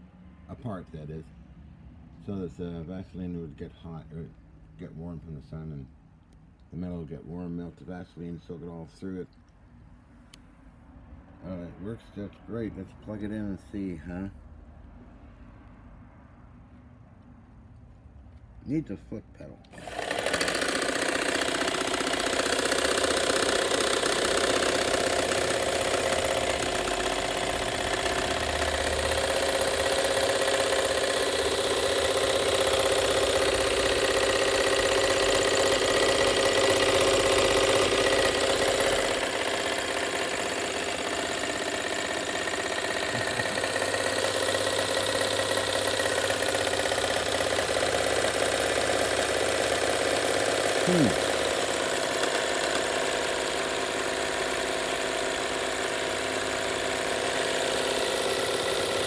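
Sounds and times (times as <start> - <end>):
sewing machine running: 19.7 - 59.0.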